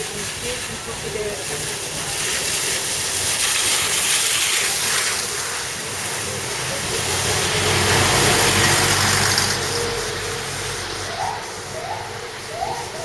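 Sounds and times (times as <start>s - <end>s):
traffic hiss: 0.0s - 13.0s
bus engine hum: 6.2s - 13.0s.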